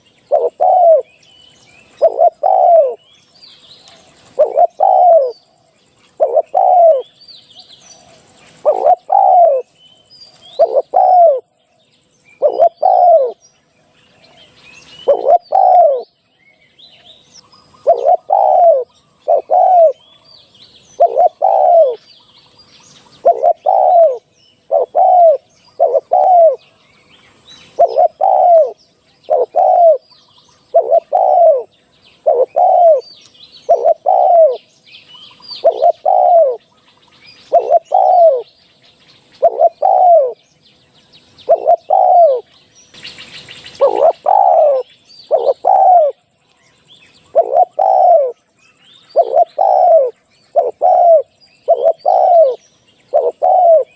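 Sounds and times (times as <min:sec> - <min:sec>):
dove cooing: 0:00.0 - 0:01.2, 0:01.8 - 0:03.1, 0:04.0 - 0:05.4, 0:06.1 - 0:07.2, 0:08.0 - 0:09.7, 0:10.4 - 0:11.5, 0:12.4 - 0:13.4, 0:15.0 - 0:16.1, 0:17.7 - 0:20.2, 0:20.9 - 0:22.0, 0:23.1 - 0:26.7, 0:27.7 - 0:34.7, 0:35.4 - 0:36.7, 0:37.4 - 0:38.5, 0:39.4 - 0:40.4, 0:41.4 - 0:42.5, 0:43.6 - 0:46.2, 0:47.2 - 0:48.4, 0:49.1 - 0:53.9
small birds chirping: 0:00.0 - 0:53.9.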